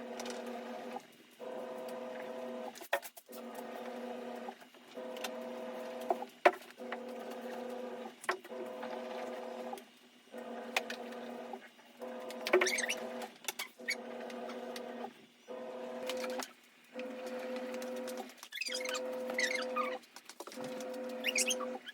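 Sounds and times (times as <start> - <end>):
small electric motor humming: 3.4 - 21.9.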